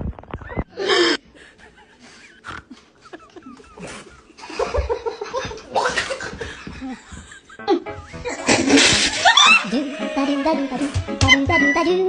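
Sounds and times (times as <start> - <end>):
snickering laughter: 1.4 - 10.8.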